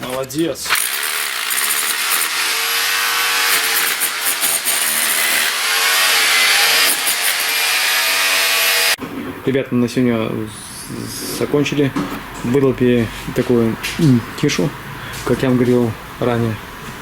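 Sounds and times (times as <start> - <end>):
rotary hammer chiselling wall: 0.7 - 9.0.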